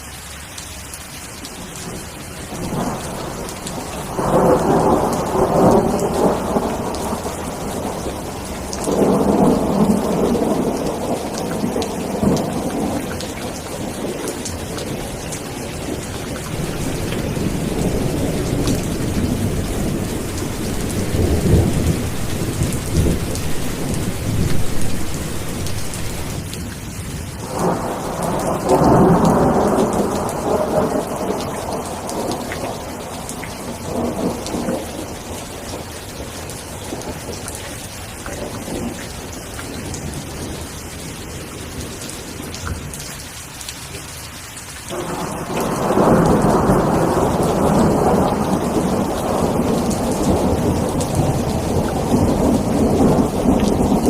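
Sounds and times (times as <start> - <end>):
heavy rain: 0.0 - 54.0
rolling thunder: 2.5 - 26.6, 27.4 - 37.5, 44.9 - 54.0.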